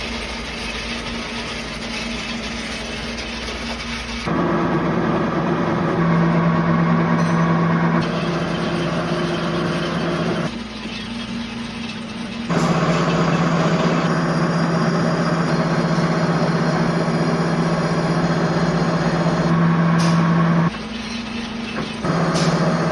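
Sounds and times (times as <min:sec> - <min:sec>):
lathe humming: 0:04.3 - 0:10.5, 0:12.5 - 0:20.7, 0:22.0 - 0:22.9.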